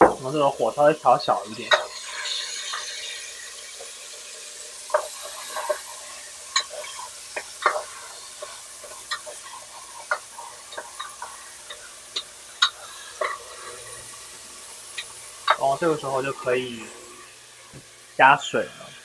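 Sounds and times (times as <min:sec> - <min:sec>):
paste sizzling in hot oil: 0:00.0 - 0:19.0
spatula scraping a pan: 0:01.6 - 0:04.0, 0:04.8 - 0:14.4.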